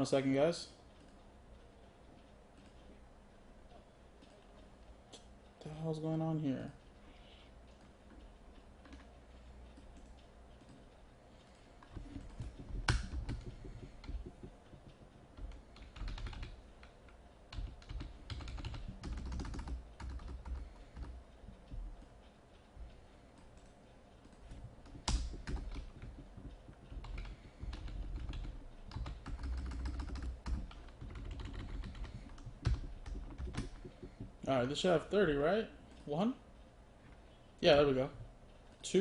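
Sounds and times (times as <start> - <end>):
computer keyboard typing: 8.8 - 9.1, 11.5 - 34.9.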